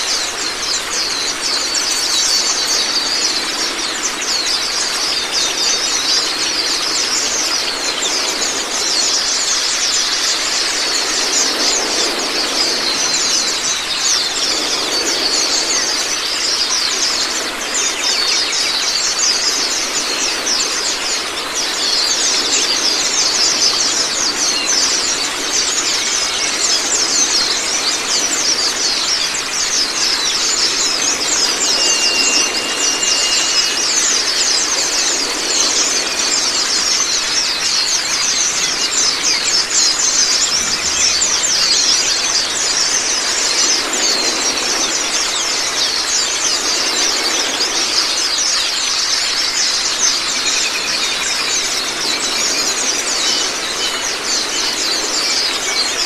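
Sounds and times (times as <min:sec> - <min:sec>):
birds chattering trills: 0:00.0 - 0:56.0
running water: 0:00.0 - 0:56.0
bird whistled notes: 0:29.1 - 0:37.4.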